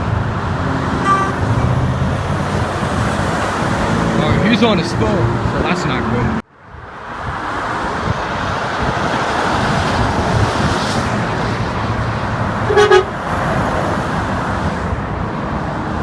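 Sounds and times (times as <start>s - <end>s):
road and tyre noise: 0.0s - 16.0s
vehicle horn toot: 1.0s - 1.8s, 12.7s - 13.2s.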